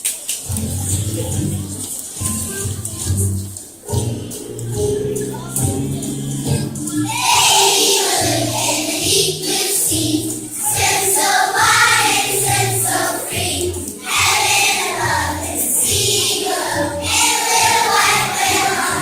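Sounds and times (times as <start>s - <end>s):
musical accompaniment with bass: 0.5s - 9.3s
children singing: 6.2s - 19.0s.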